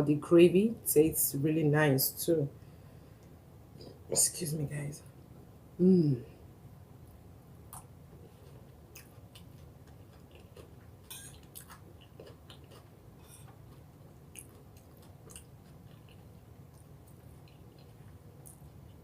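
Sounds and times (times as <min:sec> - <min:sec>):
person chewing food: 0:07.7 - 0:19.0.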